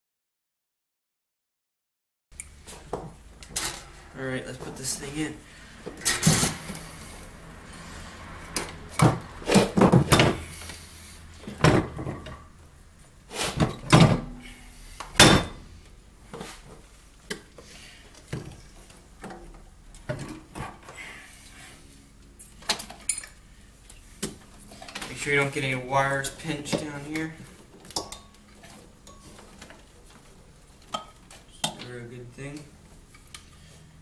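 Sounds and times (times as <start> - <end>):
metal scraping: 3.5 - 9.8.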